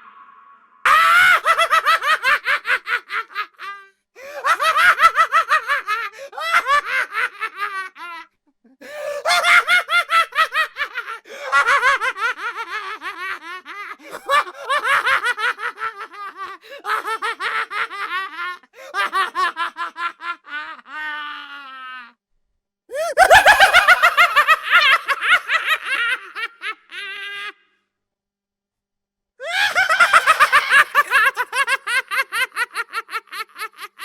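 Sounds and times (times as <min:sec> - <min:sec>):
high-pitched maniacal laughing: 0:00.8 - 0:03.8, 0:22.9 - 0:27.6, 0:29.4 - 0:34.0.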